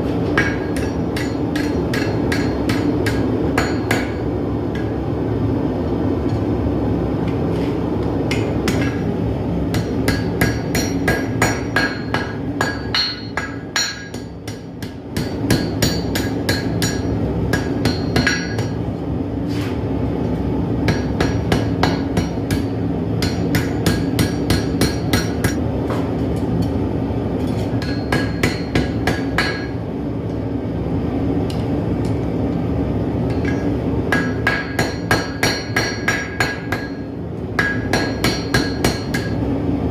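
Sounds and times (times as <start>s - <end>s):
hammer striking steel on anvil: 0.2s - 5.0s, 8.3s - 9.1s, 9.7s - 18.8s, 20.8s - 26.8s, 27.4s - 29.8s, 33.3s - 39.5s.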